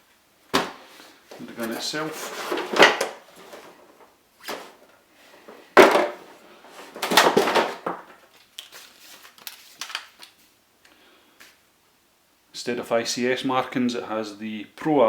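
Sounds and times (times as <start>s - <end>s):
scraping and rustling packaging: 1.4s - 4.9s, 5.7s - 10.5s.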